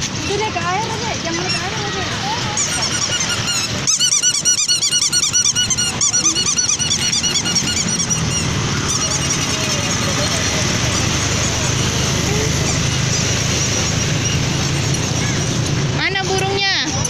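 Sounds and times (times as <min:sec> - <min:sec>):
birds honking: 0:02.6 - 0:14.2.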